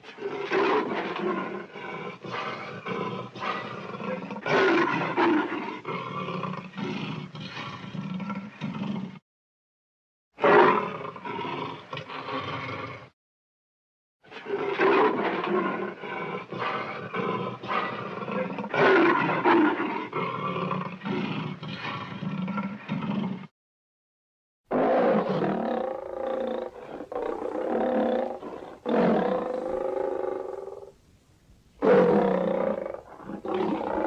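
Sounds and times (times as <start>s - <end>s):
lion roaring: 0.1s - 9.2s, 24.7s - 30.9s, 31.8s - 34.0s.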